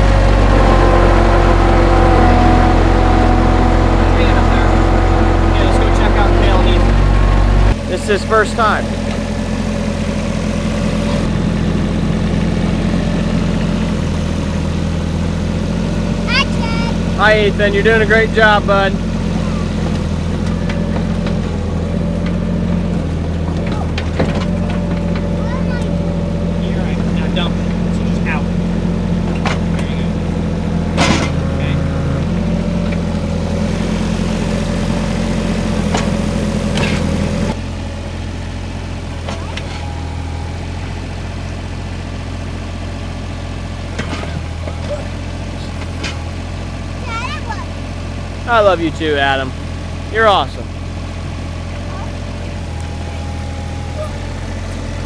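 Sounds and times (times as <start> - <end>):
diesel engine idling: 0.0 - 55.0.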